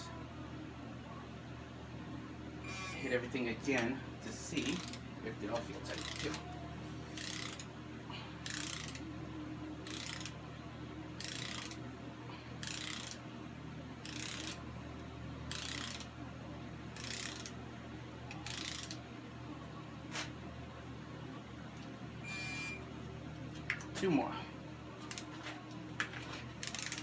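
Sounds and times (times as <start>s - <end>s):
torque wrench ratchet clicking: 4.6s - 5.0s, 5.8s - 6.4s, 7.2s - 7.7s, 8.4s - 9.0s, 9.8s - 10.4s, 11.2s - 11.8s, 12.6s - 13.2s, 14.0s - 14.6s, 15.5s - 16.1s, 17.0s - 17.6s, 18.4s - 19.0s, 26.6s - 27.0s.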